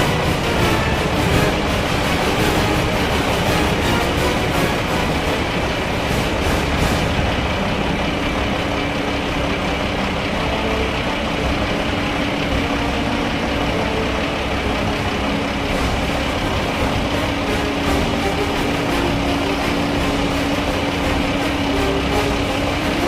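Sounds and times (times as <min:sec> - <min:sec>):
diesel farm machinery running: 0:00.0 - 0:23.0.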